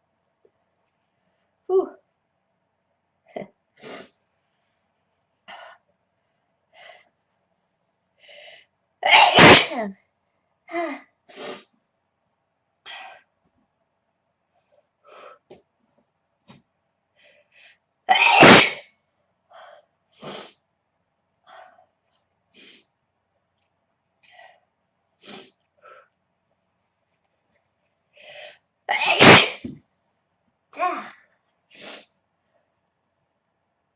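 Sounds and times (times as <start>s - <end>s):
woman sneezing: 9.1s - 10.0s, 18.1s - 18.8s, 28.9s - 29.7s.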